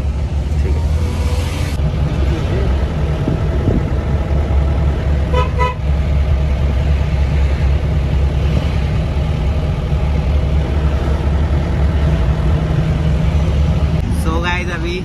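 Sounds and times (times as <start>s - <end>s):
jeep engine and road rumble: 0.0s - 15.0s
car horn toots: 5.2s - 5.9s.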